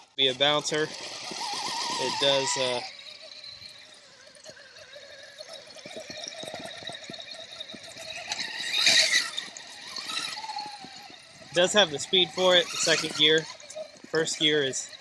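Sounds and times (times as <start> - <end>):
toy truck motor whine: 0.0 - 15.0.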